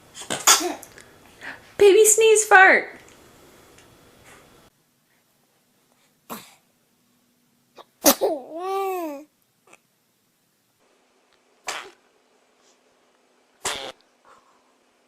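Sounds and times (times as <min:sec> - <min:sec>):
baby sneezing: 0:00.2 - 0:00.9, 0:06.3 - 0:06.6, 0:07.8 - 0:09.8, 0:11.6 - 0:12.0, 0:13.6 - 0:14.0
baby vocal sound: 0:07.8 - 0:09.8.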